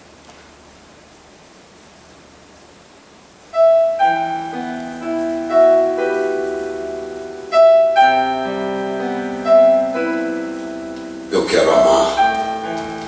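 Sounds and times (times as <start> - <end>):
faint hiss: 0.0 - 13.0
slow piano music: 3.5 - 13.0.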